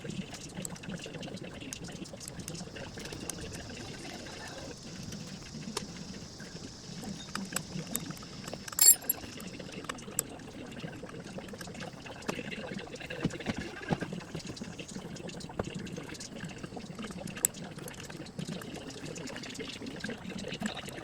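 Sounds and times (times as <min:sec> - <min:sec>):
sharp metallic clank: 0:08.8 - 0:09.2.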